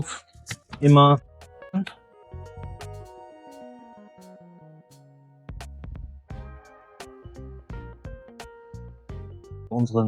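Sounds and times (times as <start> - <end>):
music with steady beat: 2.6 - 3.6, 4.9 - 9.8.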